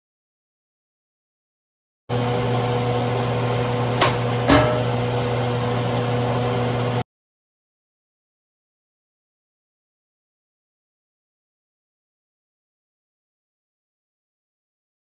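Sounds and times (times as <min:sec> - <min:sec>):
appliance electrical hum: 0:02.1 - 0:07.0.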